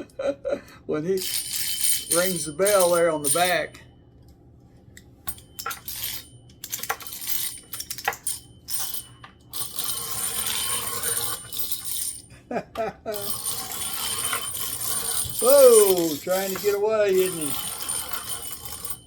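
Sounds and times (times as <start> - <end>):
clockwork toy clicking and rattling: 1.2 - 3.6, 13.2 - 19.0
toy tricycle bell ringing: 1.2 - 3.7.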